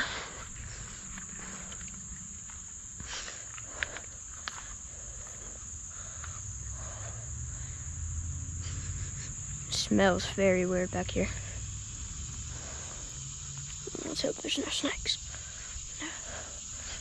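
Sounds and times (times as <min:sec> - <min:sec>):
high-pitched insect chorus: 0:00.0 - 0:17.0
low rumble: 0:04.4 - 0:14.1.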